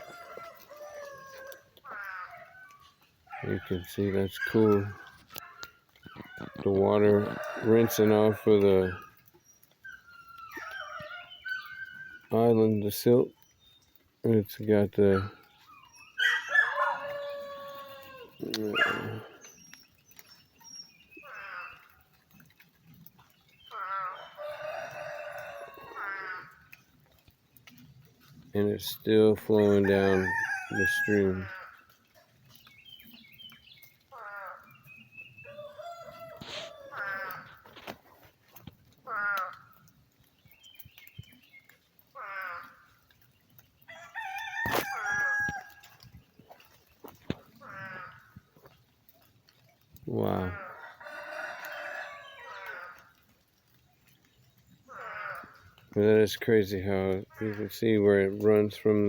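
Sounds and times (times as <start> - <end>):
rooster crowing: 0.0 - 1.7, 16.2 - 19.0, 24.0 - 26.2, 30.1 - 31.4, 35.4 - 37.4, 43.9 - 45.9, 50.7 - 53.0
chickens calling: 0.0 - 13.3, 15.0 - 27.0, 28.6 - 39.9, 40.8 - 48.7, 50.1 - 53.4.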